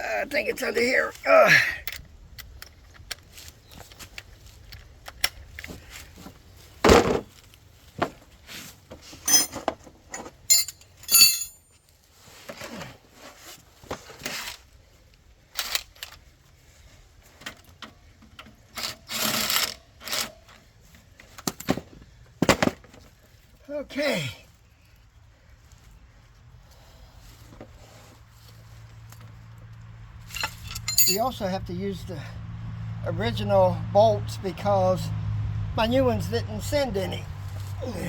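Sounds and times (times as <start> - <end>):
metal tools clanking: 9.2 - 11.6, 30.2 - 31.5
ringing metal clinks: 10.5 - 11.6, 30.3 - 31.4.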